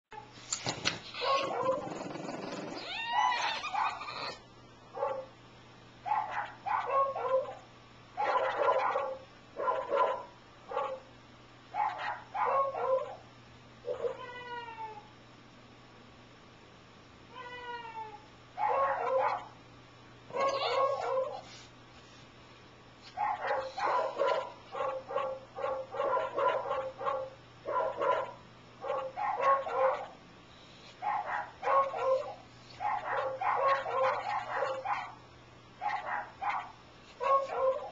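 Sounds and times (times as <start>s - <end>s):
dog yowling barks: 1.1s - 2.1s, 2.8s - 4.4s, 5.0s - 5.3s, 6.1s - 7.6s, 8.2s - 11.1s, 11.8s - 13.2s, 13.8s - 14.3s, 18.6s - 19.6s, 20.3s - 21.5s, 23.2s - 30.2s, 31.0s - 35.2s, 35.8s - 37.9s.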